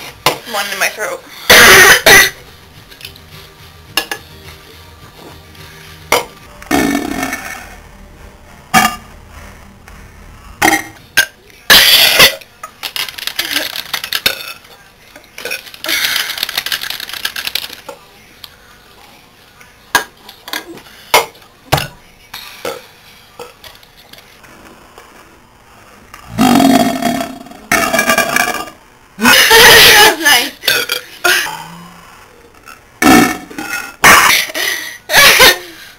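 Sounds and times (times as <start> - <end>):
person burping: 6.2 - 7.4, 10.6 - 12.4, 26.3 - 29.4, 30.6 - 31.9, 33.0 - 34.6.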